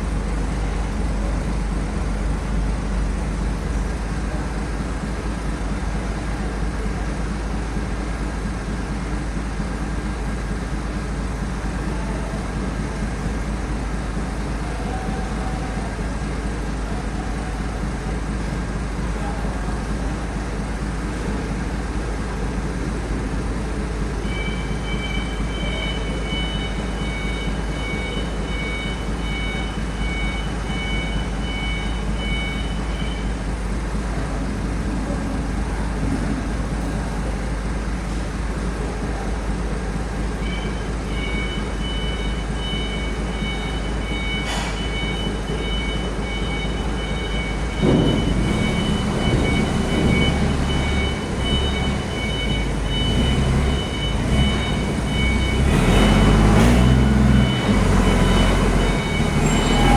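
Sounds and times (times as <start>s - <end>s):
heavy vehicle engine rumbling: 0.0s - 59.9s
fast electronic beeping: 45.0s - 56.4s.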